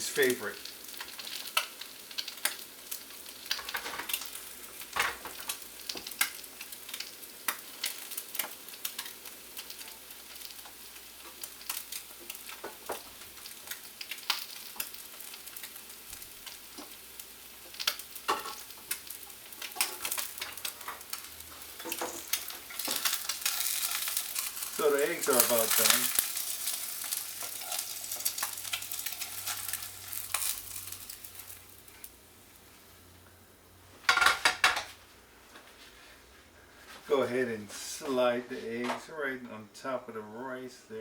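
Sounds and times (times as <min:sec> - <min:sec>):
oil popping and crackling: 0:00.0 - 0:32.2
eggs sizzling in oil: 0:00.0 - 0:35.1.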